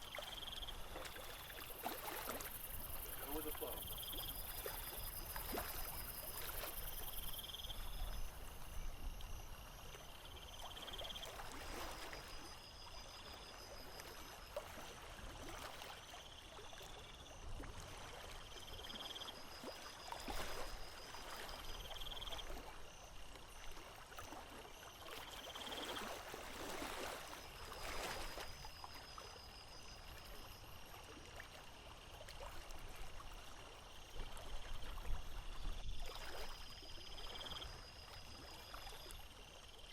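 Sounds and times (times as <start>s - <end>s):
small waves lapping: 0.0s - 39.9s.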